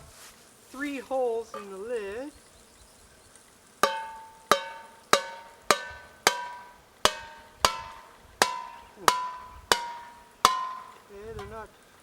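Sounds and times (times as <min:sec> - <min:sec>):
metal lid being struck: 0:03.8 - 0:11.1.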